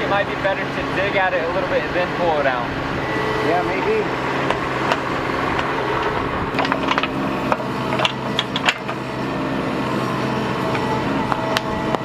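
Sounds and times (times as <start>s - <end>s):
excavator engine running: 0.0s - 12.0s
sharp metal clanks and knocks: 4.4s - 9.0s.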